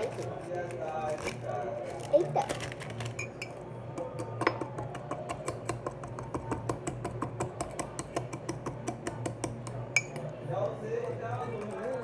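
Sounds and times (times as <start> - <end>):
utensil clinking against cup: 3.0 - 10.3.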